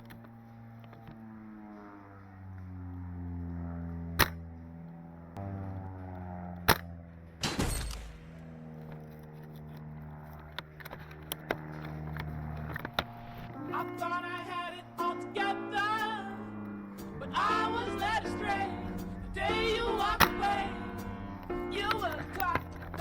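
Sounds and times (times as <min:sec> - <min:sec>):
background music: 0:13.6 - 0:23.0.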